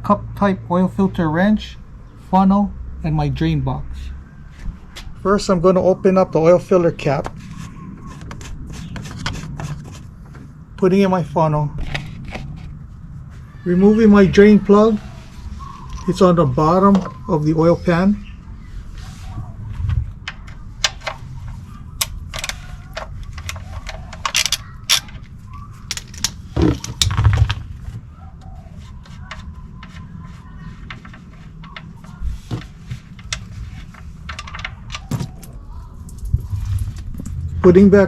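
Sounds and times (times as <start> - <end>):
metallic clicks of hand tools: 24.2 - 25.1.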